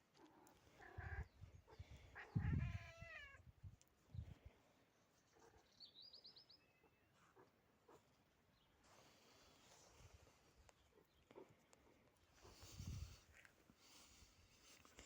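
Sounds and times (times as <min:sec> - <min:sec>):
cat meowing: 0:02.2 - 0:03.4.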